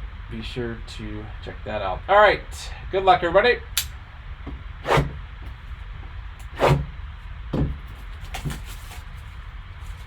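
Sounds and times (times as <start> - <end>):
steady low hum: 0.0 - 10.0
card box scraping rustles: 7.9 - 10.0.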